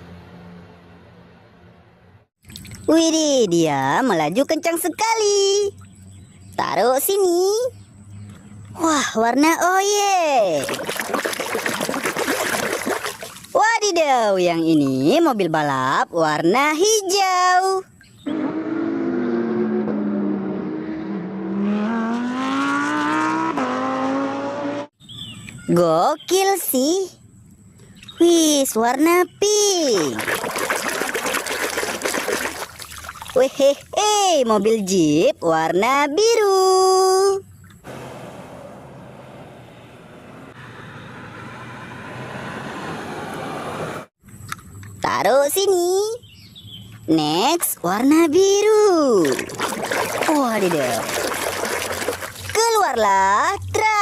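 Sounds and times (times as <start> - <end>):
race car engine revving: 18.3 - 24.9, 37.9 - 44.1.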